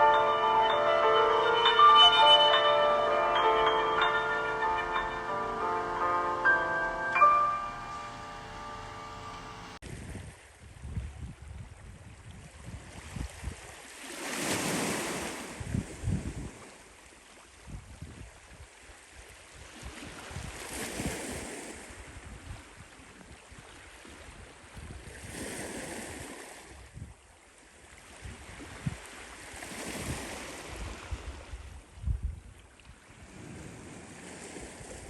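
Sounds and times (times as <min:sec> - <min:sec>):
wind buffeting microphone: 0:30.8 - 0:32.6.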